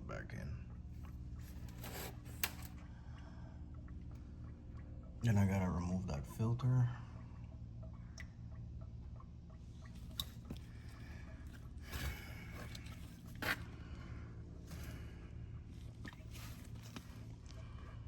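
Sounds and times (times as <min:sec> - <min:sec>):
steady low hum: 0:00.0 - 0:18.0
tools scraping and clicking: 0:01.5 - 0:02.8.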